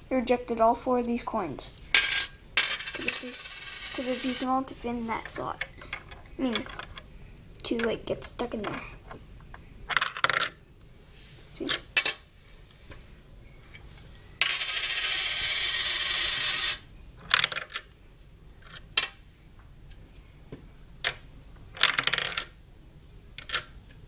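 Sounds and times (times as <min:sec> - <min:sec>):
coins clinking on plastic bricks: 0:00.9 - 0:04.6, 0:14.4 - 0:17.9, 0:21.8 - 0:22.5.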